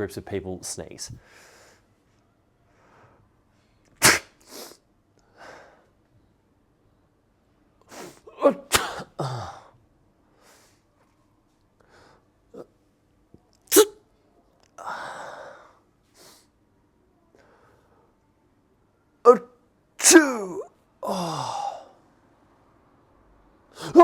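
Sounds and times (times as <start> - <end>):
man imitating sneezes: 4.0 - 4.8, 7.9 - 9.7, 13.7 - 14.0, 20.0 - 21.9, 23.8 - 24.0.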